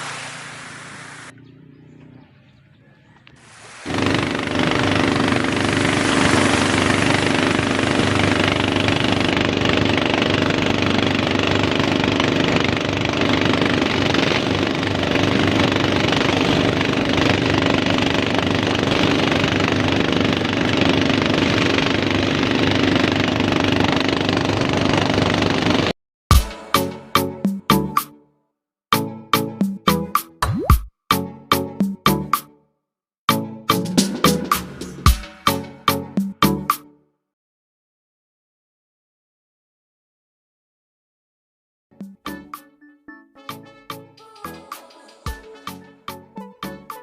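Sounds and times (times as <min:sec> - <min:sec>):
motorboat engine running: 0:00.0 - 0:25.9.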